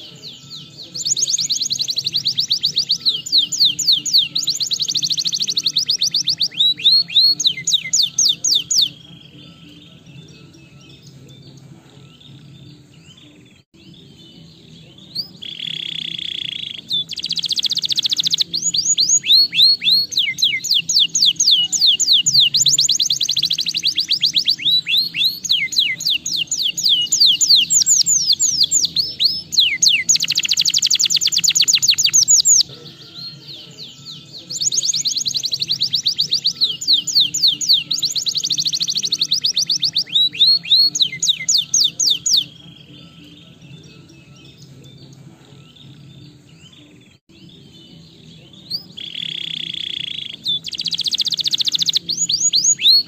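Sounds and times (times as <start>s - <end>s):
canary singing trills: 0.0s - 53.0s.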